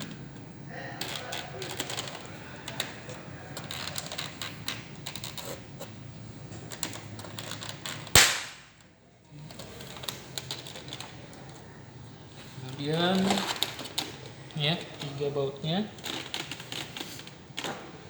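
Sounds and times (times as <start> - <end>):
plastic casing snapping: 6.8 - 8.9.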